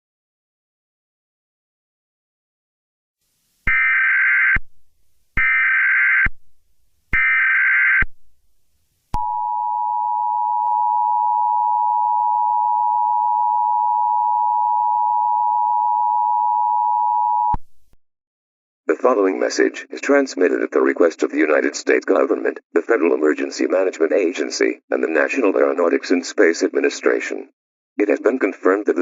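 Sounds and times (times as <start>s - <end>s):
two-tone attention signal: 9.2s - 17.6s.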